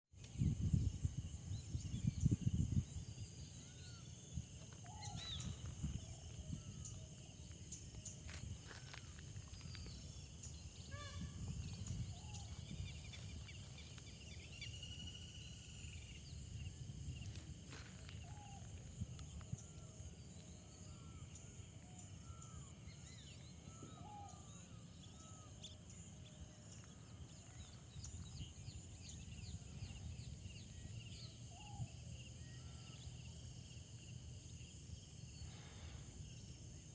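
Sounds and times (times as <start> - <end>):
wind rumbling on microphone: 0.2 - 22.5, 27.0 - 32.2
birds chirping and whistling: 1.7 - 15.2.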